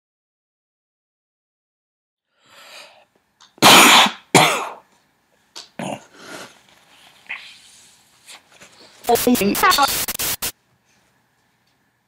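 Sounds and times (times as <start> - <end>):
person sneezing: 3.6 - 4.8.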